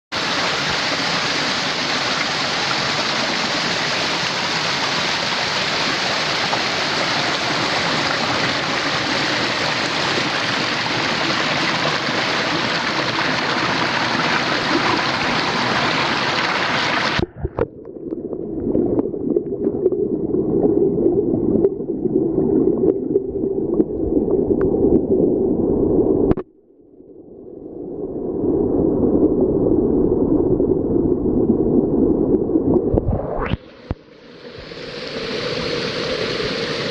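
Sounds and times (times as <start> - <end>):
waterfall rushing: 0.1 - 17.3, 33.6 - 36.9.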